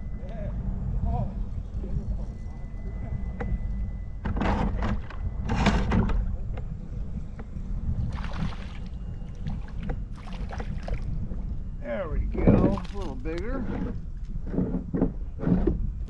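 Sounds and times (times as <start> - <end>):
steady low rumble: 0.0 - 16.0
water splashing: 8.1 - 11.2, 12.4 - 13.8.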